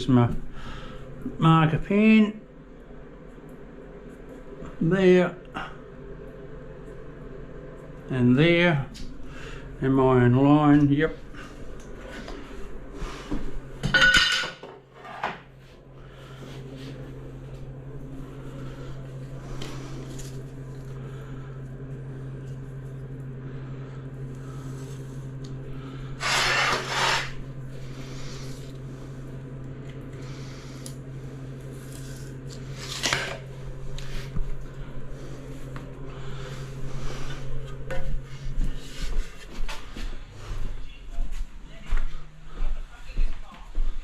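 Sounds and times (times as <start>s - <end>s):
steady low hum: 0.0s - 44.0s
tile and tools scraping and clattering: 13.9s - 15.4s, 26.2s - 27.3s.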